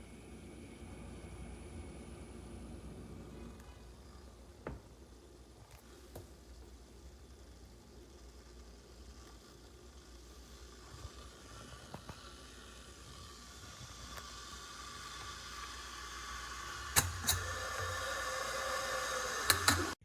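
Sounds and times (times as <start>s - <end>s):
electric kettle heating water: 0.0s - 20.0s
sharp kettle clicks: 14.1s - 20.0s.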